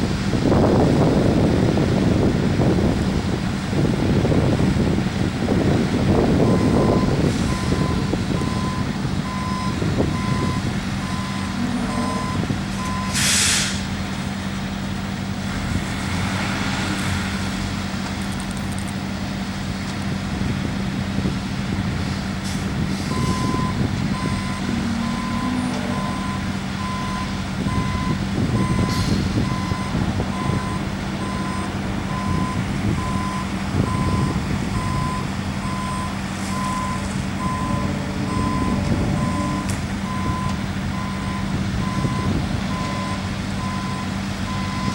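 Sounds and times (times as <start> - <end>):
diesel engine drone: 0.0 - 44.9
reversing alarm beeping: 6.4 - 13.6, 23.1 - 44.9
air hiss: 13.1 - 14.0.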